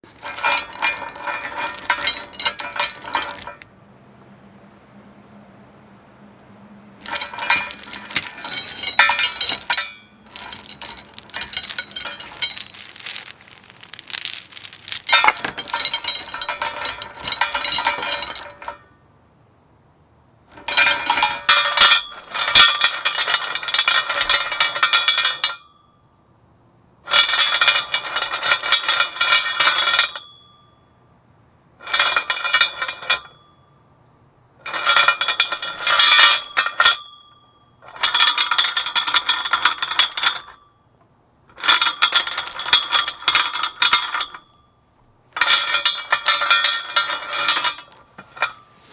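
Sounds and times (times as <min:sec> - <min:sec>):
metal chains rattling: 0:00.1 - 0:03.7, 0:07.0 - 0:18.8, 0:20.6 - 0:25.0, 0:34.7 - 0:36.8, 0:41.6 - 0:44.5, 0:45.4 - 0:48.7.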